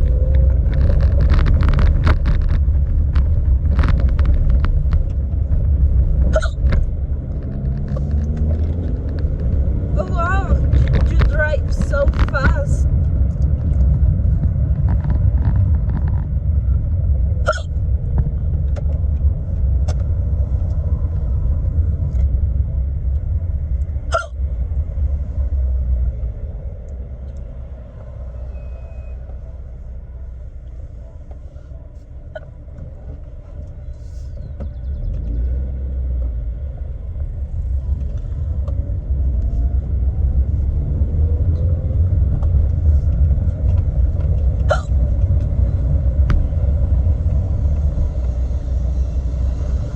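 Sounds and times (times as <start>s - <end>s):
car road noise rumble: 0.0s - 49.9s
woman hiccuping: 6.3s - 6.6s, 17.4s - 17.7s, 24.1s - 24.4s, 44.7s - 44.9s.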